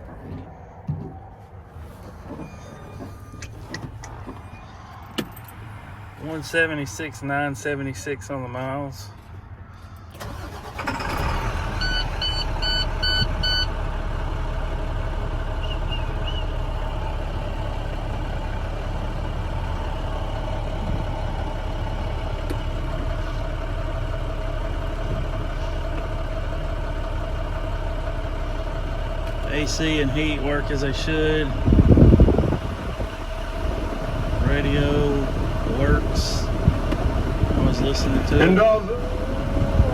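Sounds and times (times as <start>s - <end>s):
diesel engine cranking and idling: 0.0s - 39.9s
dashboard warning beeps: 11.8s - 13.7s.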